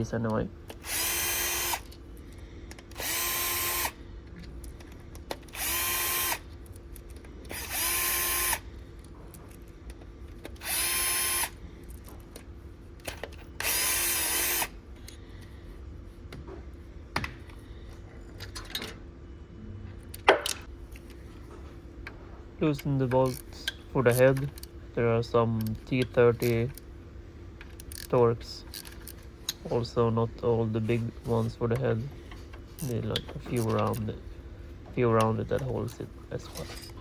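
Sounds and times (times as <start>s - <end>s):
power drill spinning bolts: 13.3s - 14.7s.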